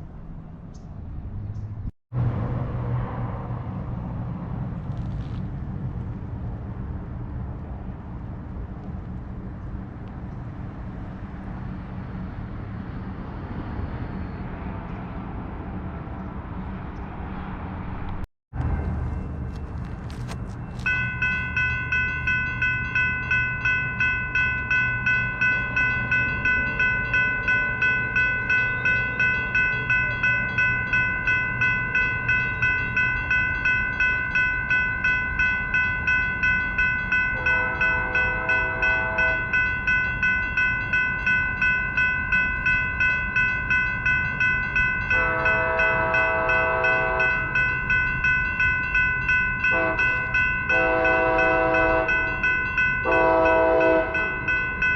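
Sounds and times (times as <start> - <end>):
railroad crossing bell ringing: 18.6 - 54.9
locomotive horn blasts: 37.4 - 39.6, 45.1 - 47.5, 49.7 - 52.4, 53.0 - 54.4.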